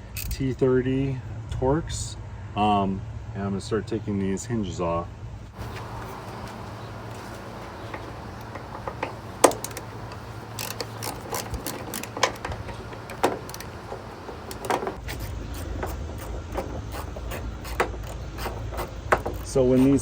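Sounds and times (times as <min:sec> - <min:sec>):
steady low hum: 0:05.6 - 0:19.4
ratchet metal clicks: 0:06.0 - 0:19.6.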